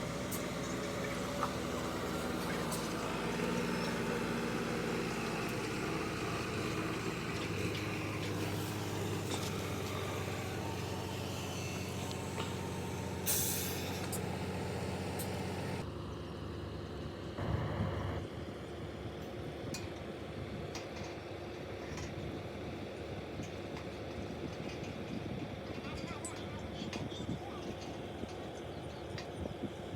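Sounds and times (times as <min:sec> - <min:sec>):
diesel truck engine running: 0:00.0 - 0:15.9, 0:17.0 - 0:18.6.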